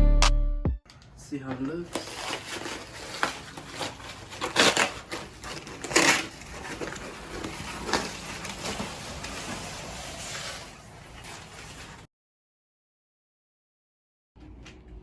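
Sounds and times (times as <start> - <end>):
packing material rustling: 1.8 - 12.1.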